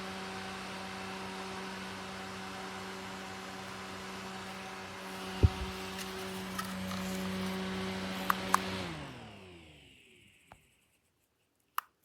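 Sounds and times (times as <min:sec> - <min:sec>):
small fan humming: 0:00.0 - 0:11.9
loud low thump: 0:05.4 - 0:05.8.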